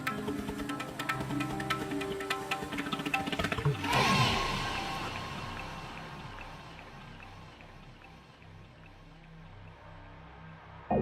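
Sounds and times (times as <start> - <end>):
quiet background music: 0.0 - 11.0.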